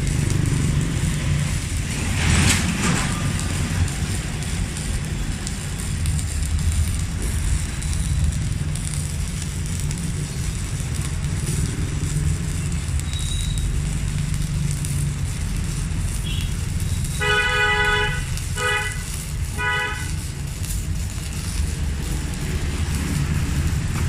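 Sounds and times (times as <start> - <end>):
low rumble of traffic: 0.0 - 24.0
vehicle horn toots: 17.2 - 19.0.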